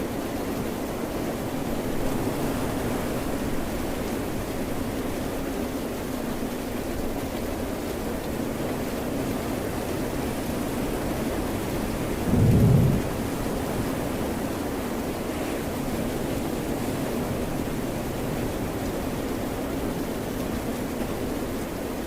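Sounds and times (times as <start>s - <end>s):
steady rain: 0.0s - 22.0s
ocean surf: 0.6s - 7.7s, 8.5s - 21.3s.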